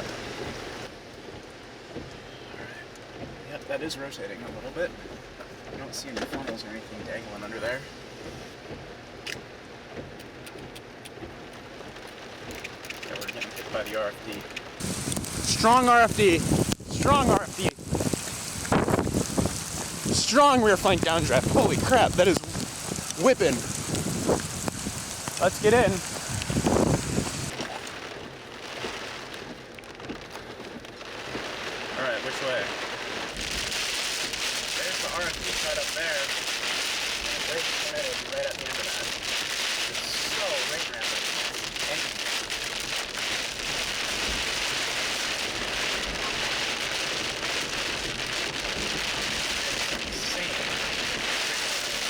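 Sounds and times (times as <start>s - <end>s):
rain pattering on vehicle: 0.0s - 52.0s
gusting wind: 11.8s - 29.3s, 31.1s - 52.0s.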